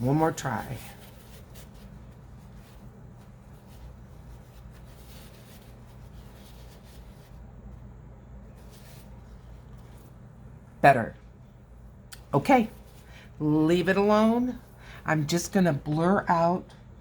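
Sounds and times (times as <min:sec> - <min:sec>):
paintbrush strokes on paper: 0:00.0 - 0:10.5
steady low hum: 0:00.0 - 0:17.0.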